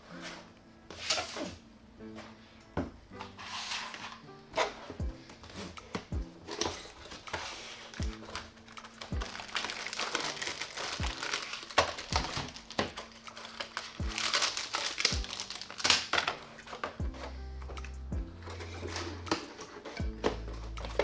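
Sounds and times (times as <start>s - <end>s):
music with thudding beat: 5.0s - 6.4s, 8.0s - 8.3s, 12.1s - 12.4s, 15.2s - 15.4s, 17.0s - 21.0s
plastic packaging crinkling: 6.5s - 17.8s.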